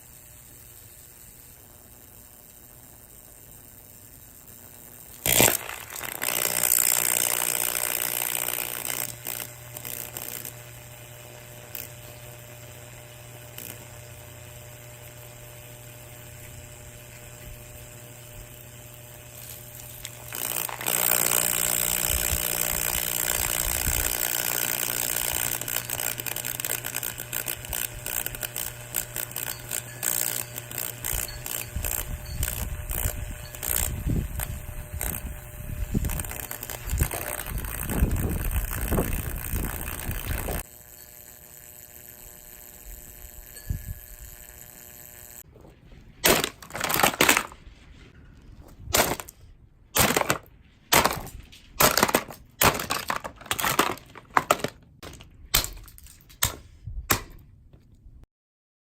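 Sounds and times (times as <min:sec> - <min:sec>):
electric fan motor humming: 0:00.0 - 0:57.4
clattering grinding with clicks: 0:05.1 - 0:12.4, 0:18.9 - 0:40.7, 0:46.2 - 0:49.4, 0:50.0 - 0:57.9.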